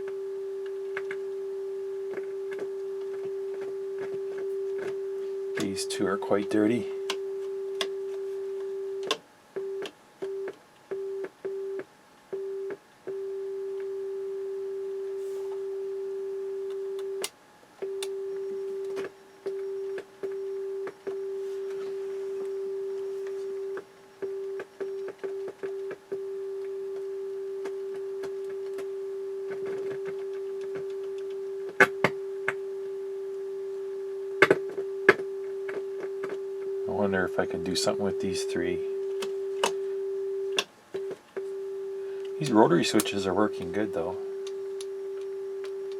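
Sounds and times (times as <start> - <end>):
steady test tone: 14.0 - 45.9.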